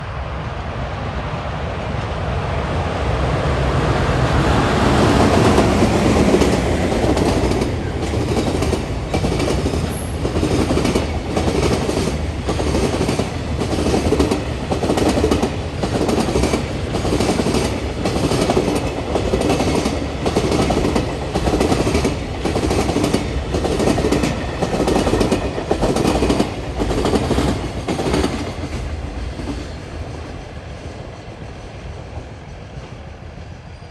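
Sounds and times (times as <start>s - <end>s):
locomotive approaching: 0.0s - 33.9s
wheels clacking over rail joints: 4.9s - 29.6s.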